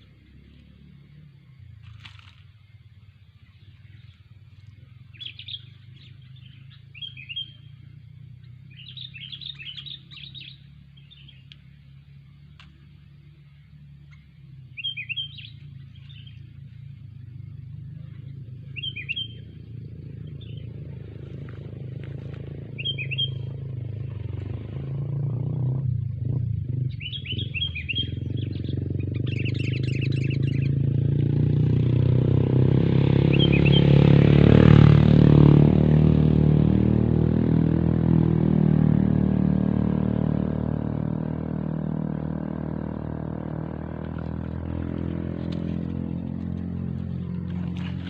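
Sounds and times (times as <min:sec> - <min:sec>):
low steady rumble: 0:00.0 - 0:31.9, 0:39.7 - 0:48.0
songbird chirping: 0:00.0 - 0:32.0, 0:32.6 - 0:34.7.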